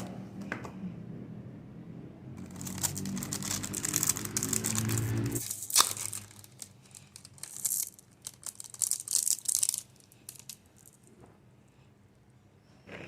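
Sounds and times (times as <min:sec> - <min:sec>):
plastic wrappers crinkling and tearing: 0:02.4 - 0:11.1.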